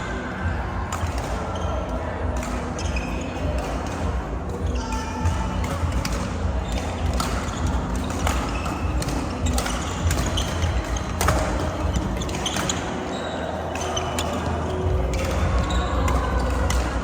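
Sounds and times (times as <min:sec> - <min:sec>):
racket hitting shuttlecock: 0:00.9 - 0:01.5, 0:02.4 - 0:17.0
shoes squeaking on court: 0:02.8 - 0:17.0
steady low rumble: 0:14.0 - 0:17.0.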